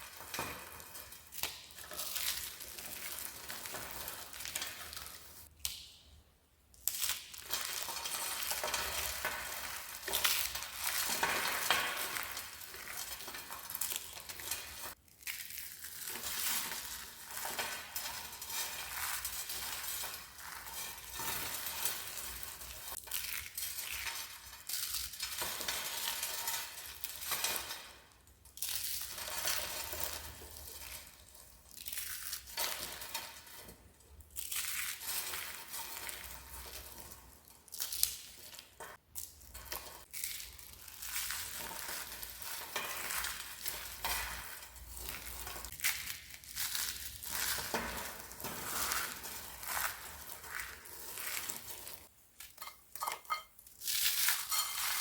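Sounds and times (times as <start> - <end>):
dried soap crackling and crunching: 0.0 - 6.0, 6.7 - 27.3, 28.1 - 53.0.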